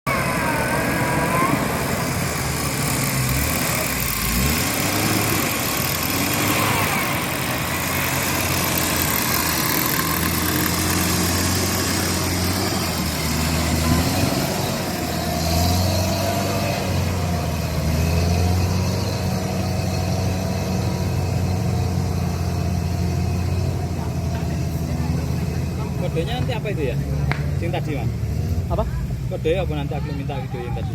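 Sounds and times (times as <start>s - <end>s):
vehicle engine humming: 0.0s - 30.9s.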